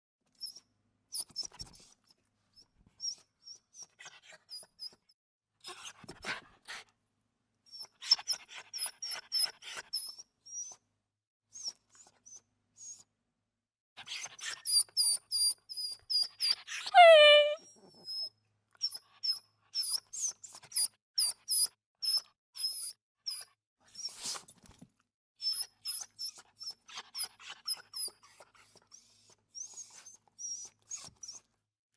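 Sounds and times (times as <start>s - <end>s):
small dog whimpering: 16.9s - 18.0s.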